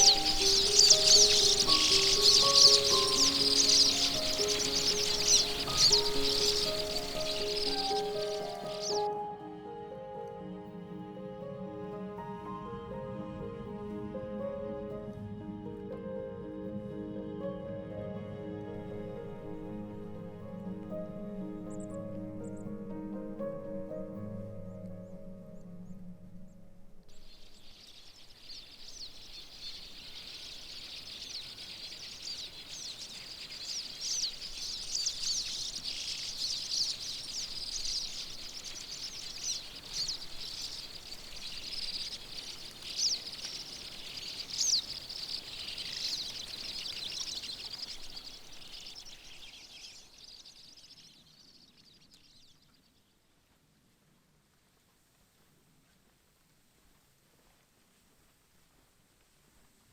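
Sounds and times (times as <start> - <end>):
small birds chirping: 0.0 - 9.3, 18.7 - 53.6.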